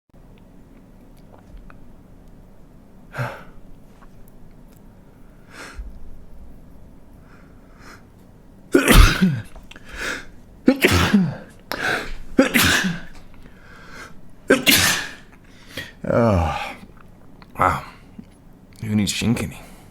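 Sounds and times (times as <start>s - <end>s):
man sneezing loudly: 8.8s - 13.2s, 14.5s - 16.8s.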